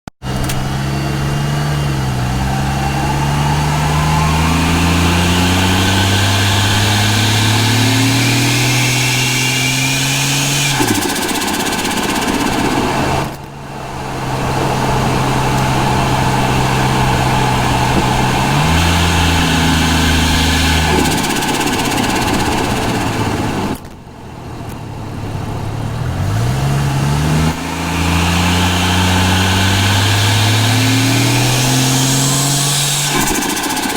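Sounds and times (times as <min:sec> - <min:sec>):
turbocharged car engine revving: 0:00.2 - 0:33.9
turbo flutter: 0:02.2 - 0:24.0, 0:27.5 - 0:33.9.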